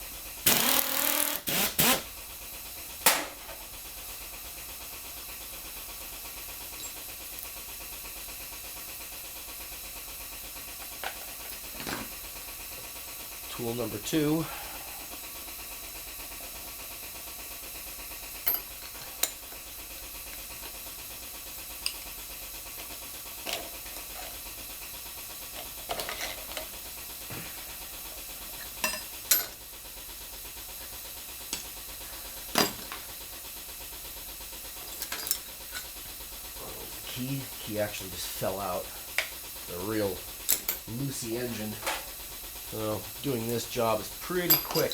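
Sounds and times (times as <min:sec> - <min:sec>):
metal tools clicking: 0:44.4 - 0:44.9.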